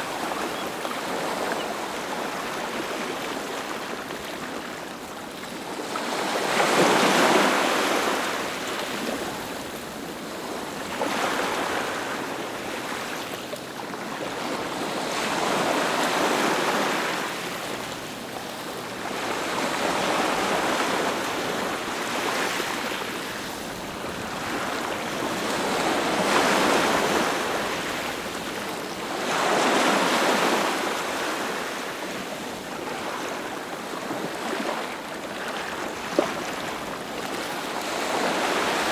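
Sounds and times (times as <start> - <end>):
ocean waves breaking: 13.9 - 38.9.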